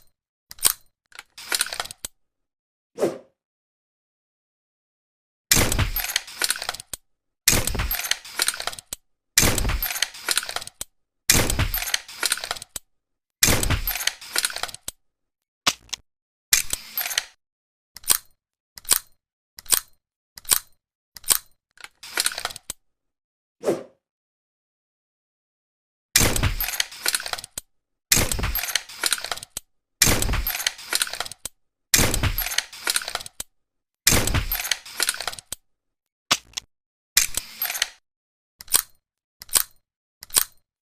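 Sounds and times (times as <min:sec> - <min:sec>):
pistol shots with low thump: 0:34.1 - 0:34.7.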